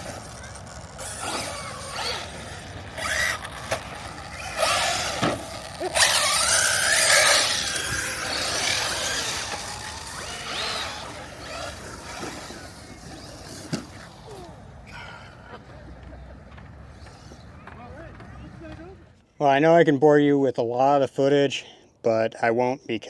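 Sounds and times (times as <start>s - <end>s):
rc truck electric motor whining: 0.0s - 15.2s.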